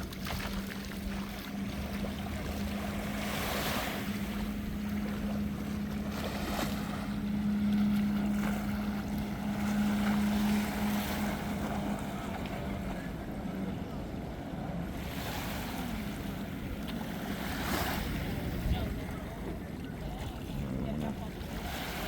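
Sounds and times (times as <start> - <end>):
low motor hum: 0.0 - 22.0
water washing: 0.0 - 22.0
wind on microphone: 15.7 - 22.0.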